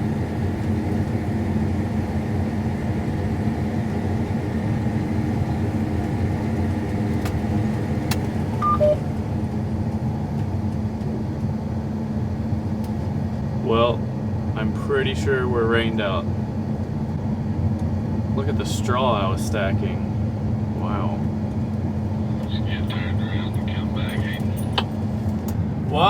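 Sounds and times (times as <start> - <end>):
combine harvester running: 0.0 - 10.7, 11.3 - 26.0
two-note beep: 8.6 - 9.0.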